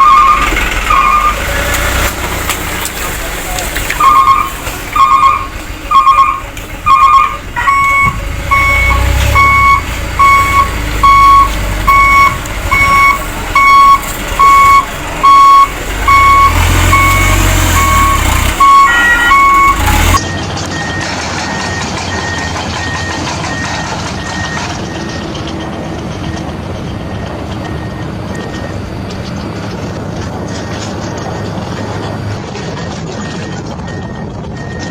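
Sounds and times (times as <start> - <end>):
low engine rumble: 0.0 - 34.9
truck reversing beeper: 0.0 - 34.9
fainter higher-pitched beeping: 4.0 - 25.4.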